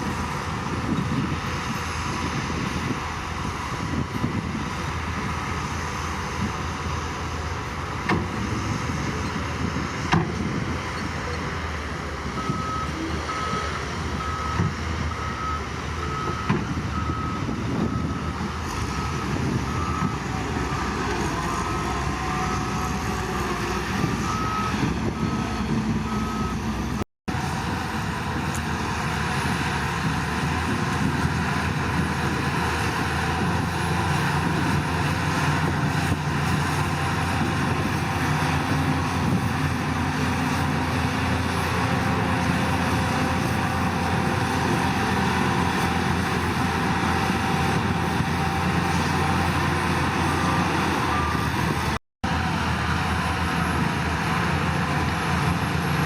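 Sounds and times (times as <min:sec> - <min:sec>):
heavy diesel machinery running: 0:00.0 - 0:56.0
reversing alarm beeping: 0:12.4 - 0:23.0.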